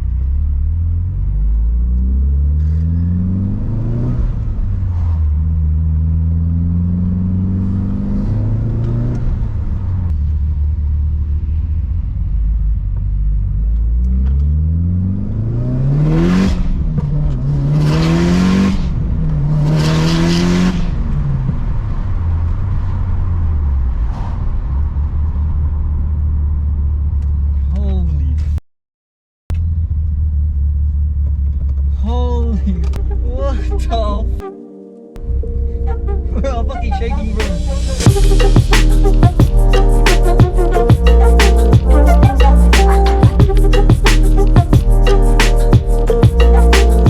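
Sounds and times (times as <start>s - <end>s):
car engine idling and revving: 0.0s - 28.6s, 29.5s - 34.4s.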